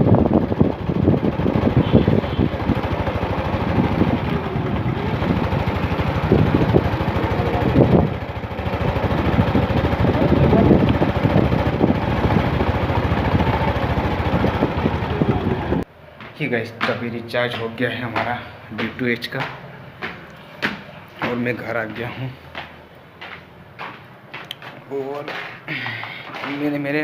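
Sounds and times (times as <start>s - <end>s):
wind buffeting microphone: 0.0s - 15.8s
vehicle engine: 0.0s - 16.3s
road noise: 0.0s - 27.0s.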